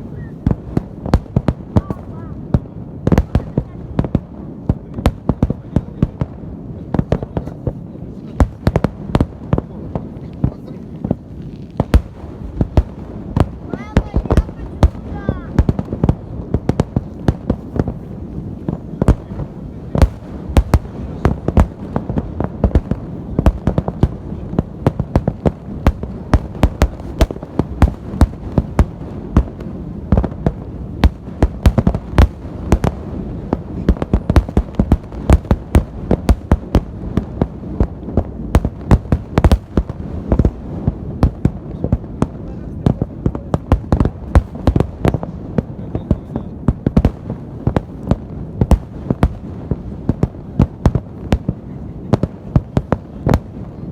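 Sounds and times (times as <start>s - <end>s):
fireworks sharp bangs: 0.0s - 53.9s
low rumble of bursts: 0.0s - 53.9s.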